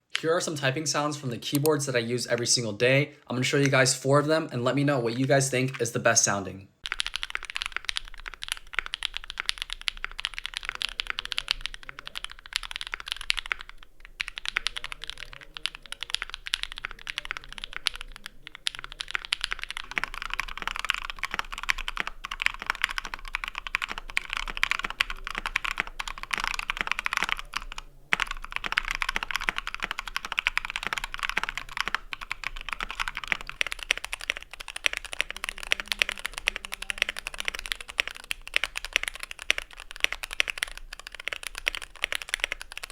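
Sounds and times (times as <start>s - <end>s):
fast keyboard typing: 3.4s - 42.9s.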